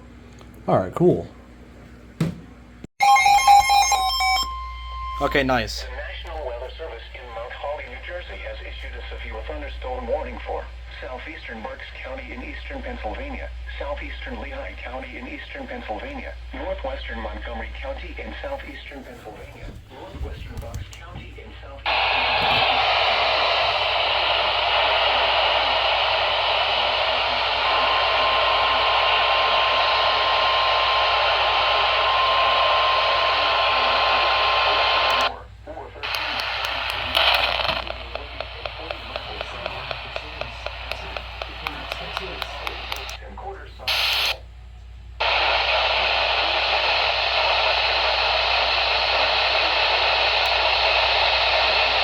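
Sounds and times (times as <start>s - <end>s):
high warning alarm tone: 3.0s - 5.9s
radio static hiss: 5.2s - 44.5s, 45.2s - 52.0s.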